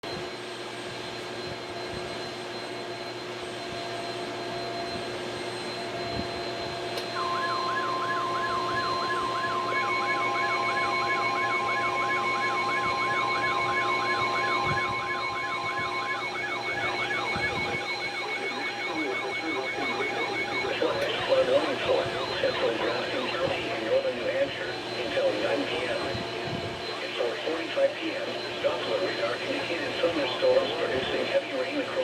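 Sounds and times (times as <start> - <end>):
warbling electronic siren tone: 1.4 - 27.4
rapid pulsing beeps: 1.4 - 32.0
steady beep tone: 2.1 - 32.0
higher warble: 7.0 - 22.4.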